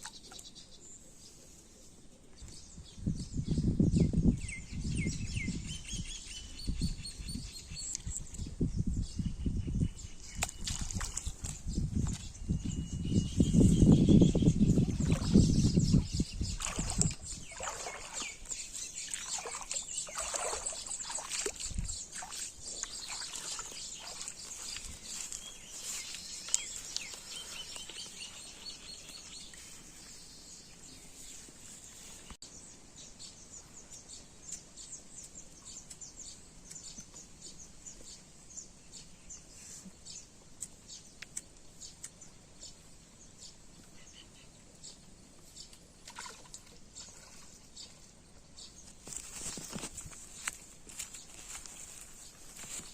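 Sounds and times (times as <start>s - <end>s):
birds chirping: 0.0s - 52.9s.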